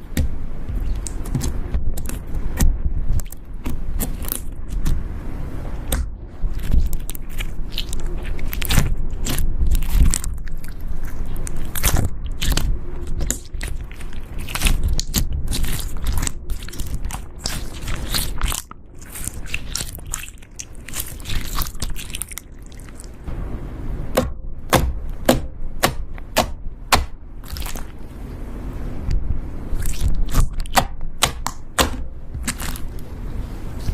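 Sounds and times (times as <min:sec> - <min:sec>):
slime squeezed by hand crackling: 0:05.8 - 0:23.2, 0:27.4 - 0:28.0, 0:29.7 - 0:33.1.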